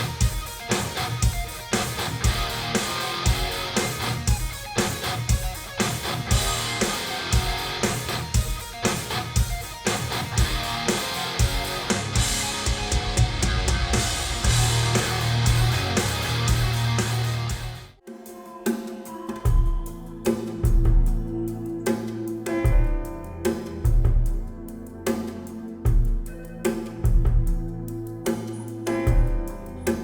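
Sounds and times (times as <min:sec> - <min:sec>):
rock music over loudspeakers: 0:00.0 - 0:18.0.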